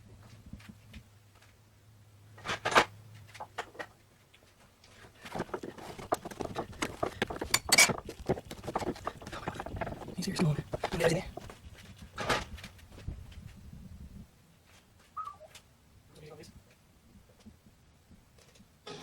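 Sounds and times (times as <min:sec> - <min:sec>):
metal tools clinking and scraping: 0:05.0 - 0:11.6.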